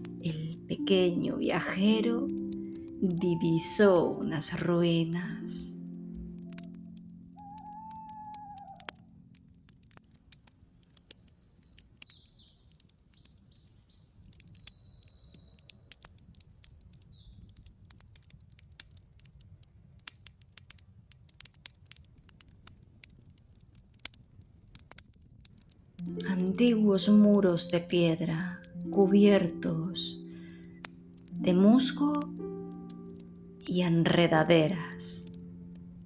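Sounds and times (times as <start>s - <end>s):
campfire crackling and popping: 0.0s - 36.0s
small bird twittering: 7.4s - 9.0s, 10.2s - 17.4s.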